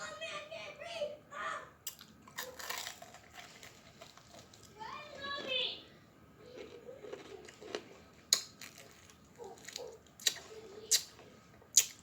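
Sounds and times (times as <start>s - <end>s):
wet chewing clicks and smacks: 1.8s - 4.7s, 6.6s - 12.0s.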